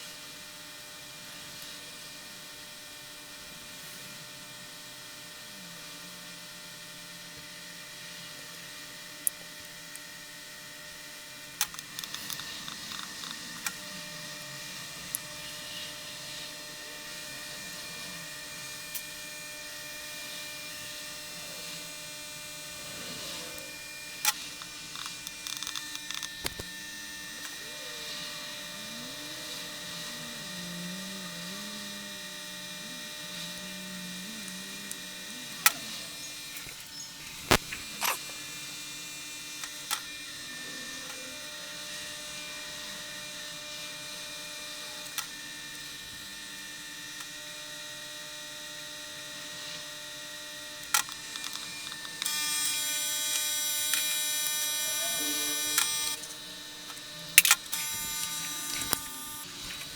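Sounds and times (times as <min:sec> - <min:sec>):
electrical hum of equipment: 0:00.0 - 0:59.9
sharp clicks: 0:24.2 - 0:26.7.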